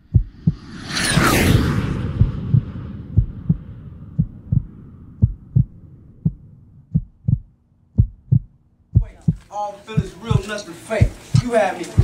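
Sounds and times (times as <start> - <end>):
heartbeat thumps: 0.0 - 0.8, 1.9 - 12.0
crash-like wash of noise: 0.2 - 6.8.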